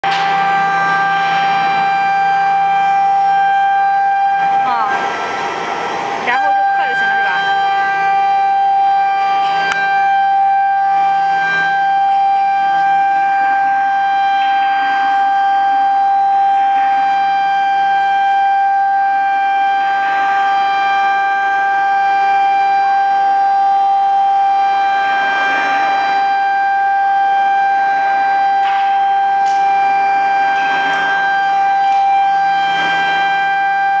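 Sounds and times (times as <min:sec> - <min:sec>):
cutting noise: 0:00.0 - 0:12.4
router spindle high-pitched whine: 0:00.0 - 0:34.0.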